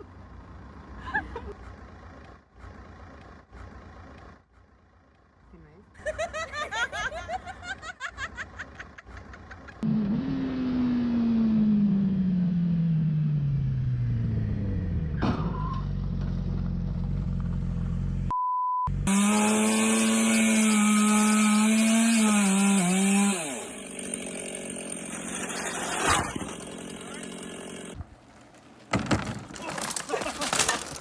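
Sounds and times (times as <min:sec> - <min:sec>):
motor falling in pitch: 0:09.8 - 0:16.0, 0:18.9 - 0:28.0
short single-tone bleep: 0:18.3 - 0:18.9
chainsaw revving: 0:19.0 - 0:28.0.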